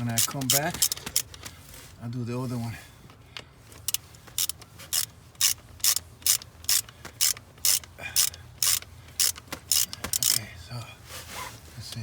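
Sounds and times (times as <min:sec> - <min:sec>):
ratchet wrench clicking: 0:00.0 - 0:01.4, 0:03.8 - 0:10.4.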